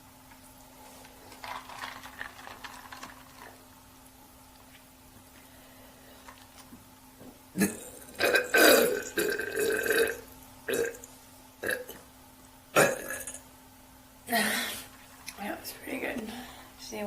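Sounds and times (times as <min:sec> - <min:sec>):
woman belching: 0:07.6 - 0:11.0, 0:11.6 - 0:12.0, 0:12.8 - 0:13.4.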